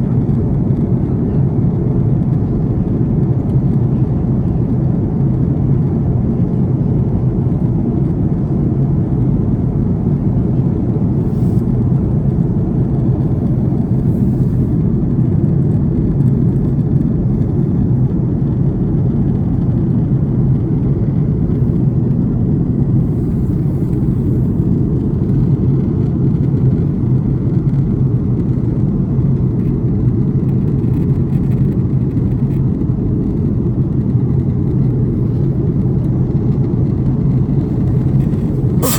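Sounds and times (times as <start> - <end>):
airliner cabin engine rumble: 0.0 - 38.9.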